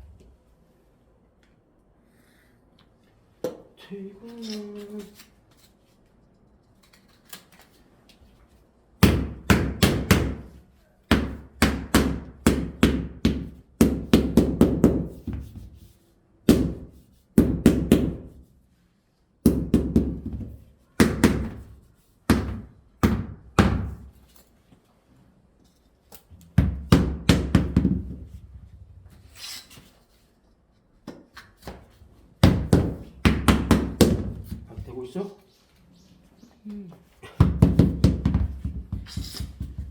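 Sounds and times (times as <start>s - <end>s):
hammer knocking wooden planks: 32.4s - 34.9s.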